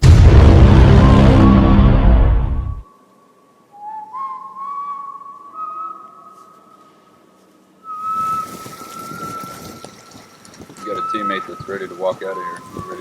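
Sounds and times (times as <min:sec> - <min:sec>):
rush of noise: 0:00.0 - 0:02.9
whistle-like tones: 0:03.7 - 0:06.8, 0:07.8 - 0:13.0.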